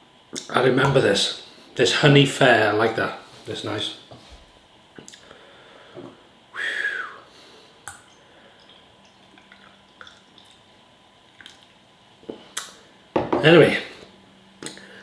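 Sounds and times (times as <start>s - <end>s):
wet mouth clicks and smacks: 5.0s - 5.3s, 11.3s - 11.7s, 14.6s - 14.8s.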